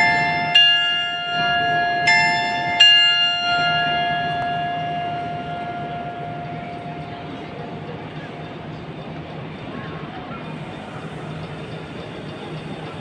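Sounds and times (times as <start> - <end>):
bell-like chime tones: 0.0 - 9.3.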